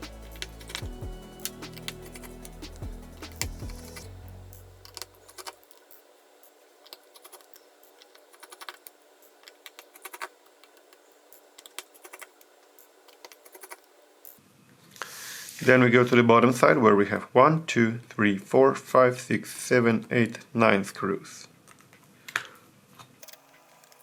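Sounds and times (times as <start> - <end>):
screws tapping on surface: 4.9 - 13.8.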